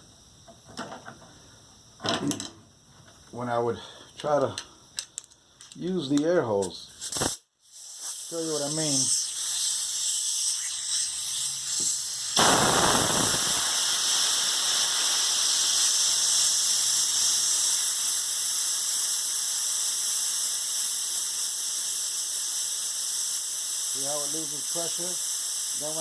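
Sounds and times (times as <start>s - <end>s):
compressed air blast and hiss: 6.8s - 26.0s.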